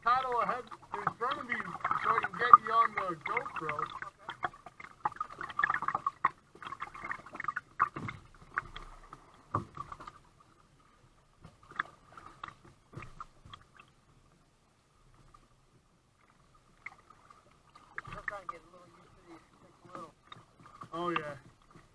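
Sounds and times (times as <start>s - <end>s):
paddle strokes splashing water: 0.0s - 21.9s
paddle knocks: 7.4s - 10.1s.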